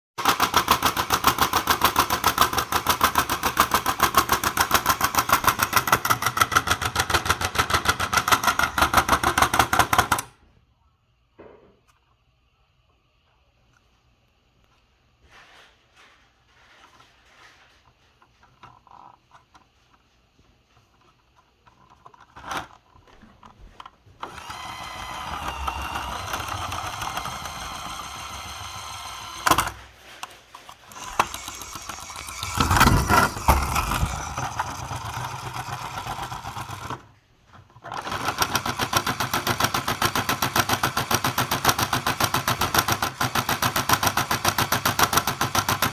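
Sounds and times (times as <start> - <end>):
small motor running: 0.2 - 10.2, 24.2 - 37.1, 37.9 - 45.9.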